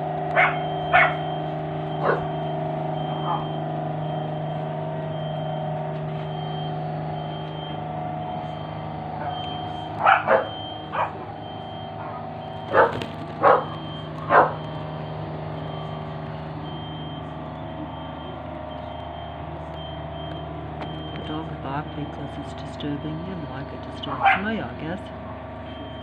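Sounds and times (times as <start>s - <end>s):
low mechanical hum: 0.0s - 26.0s
dog barking: 0.3s - 1.2s, 2.0s - 2.4s, 3.1s - 3.6s, 10.0s - 11.4s, 12.0s - 14.6s, 24.1s - 24.5s
faint high beep: 0.6s - 10.9s, 13.8s - 22.2s, 25.6s - 26.0s.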